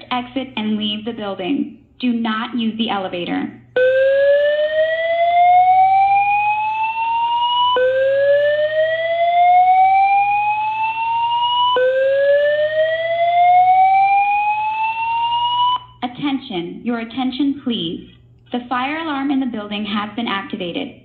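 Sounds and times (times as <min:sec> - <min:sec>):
fire alarm whoop tone: 0:03.8 - 0:16.0.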